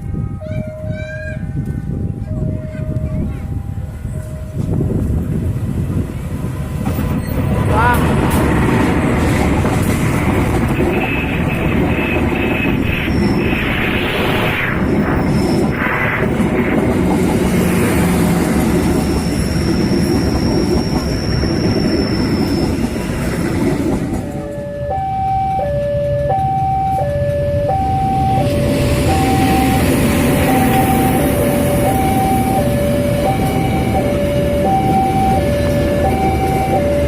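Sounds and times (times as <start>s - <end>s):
two-tone warning signal: 0.0s - 5.2s, 10.6s - 15.6s, 24.3s - 37.0s
train rumbling past: 0.0s - 37.0s.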